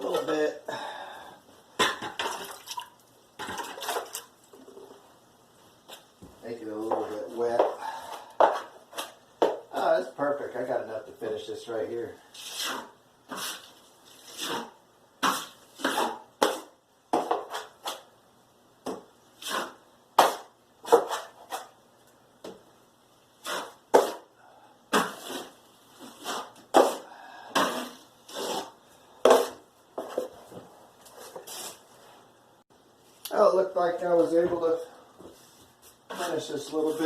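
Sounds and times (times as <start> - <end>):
drywall knife scraping: 12.3 - 18.1, 19.4 - 21.8, 23.4 - 24.3, 24.9 - 30.3.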